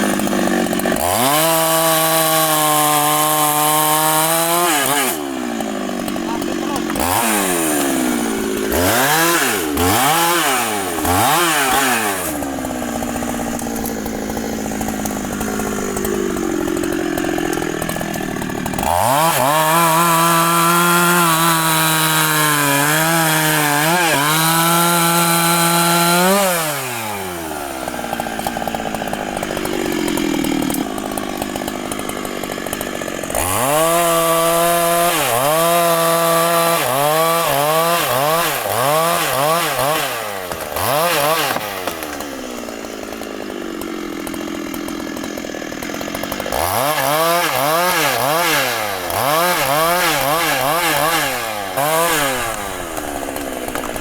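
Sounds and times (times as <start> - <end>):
chainsaw revving and cutting wood: 0.0 - 54.0.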